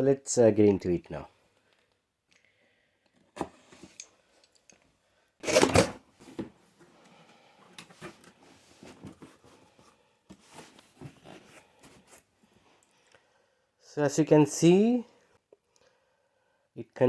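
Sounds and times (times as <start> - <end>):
cardboard ripping: 5.4 - 6.0.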